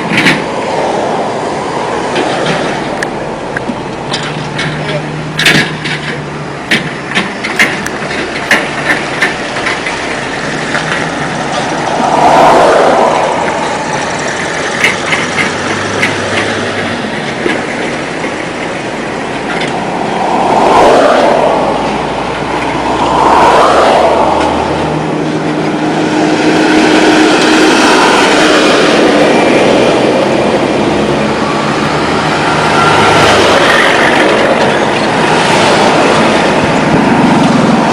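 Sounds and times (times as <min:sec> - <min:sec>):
road noise: 0:00.0 - 0:37.9
vehicles passing: 0:00.0 - 0:37.9.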